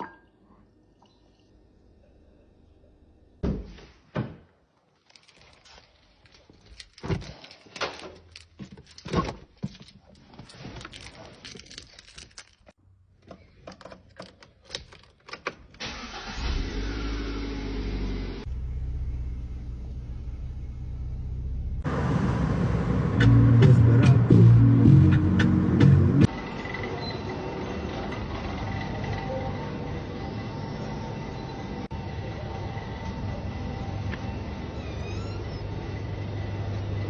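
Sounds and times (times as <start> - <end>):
car engine starting and idling: 15.8 - 33.1.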